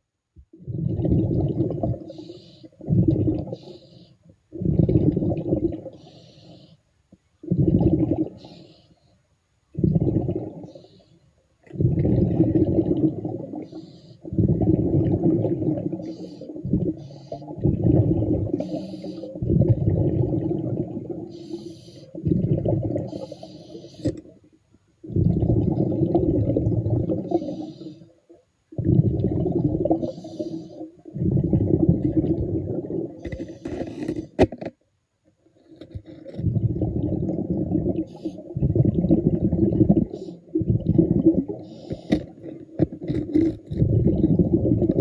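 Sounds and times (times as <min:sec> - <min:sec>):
exhaled air bubbling: 0:00.4 - 0:06.7, 0:07.4 - 0:08.8, 0:09.7 - 0:11.0, 0:11.6 - 0:34.4, 0:36.0 - 0:45.0
regulator inhalation hiss: 0:06.0 - 0:06.8, 0:16.0 - 0:17.5, 0:18.6 - 0:19.4, 0:21.3 - 0:22.2, 0:23.1 - 0:24.2, 0:30.0 - 0:30.9, 0:41.6 - 0:42.3.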